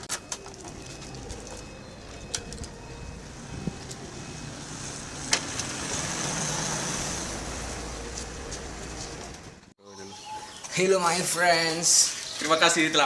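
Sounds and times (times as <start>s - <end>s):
traffic noise: 0.0s - 13.0s
vehicle passing by: 2.8s - 9.6s.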